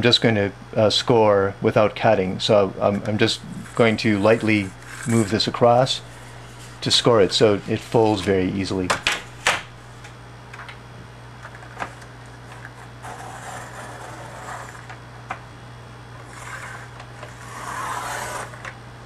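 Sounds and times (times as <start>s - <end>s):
blade scraping paper: 3.3s - 8.6s, 12.6s - 15.0s, 16.2s - 18.8s.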